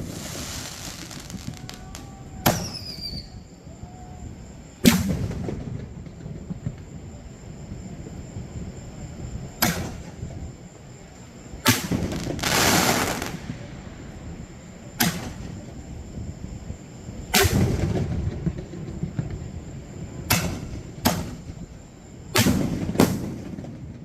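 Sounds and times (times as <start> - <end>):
fireworks bangs: 0.0 - 3.4, 4.8 - 6.8, 11.7 - 13.7, 17.3 - 19.4, 22.3 - 24.0
loud hiss: 0.0 - 3.4, 11.7 - 13.8.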